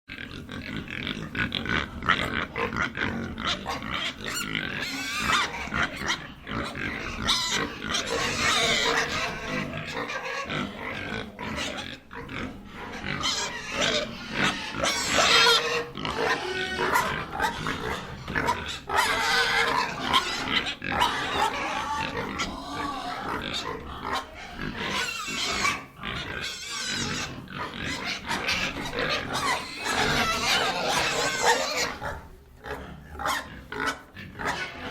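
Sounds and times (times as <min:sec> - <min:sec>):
piglet squealing and grunting: 0:00.2 - 0:34.9.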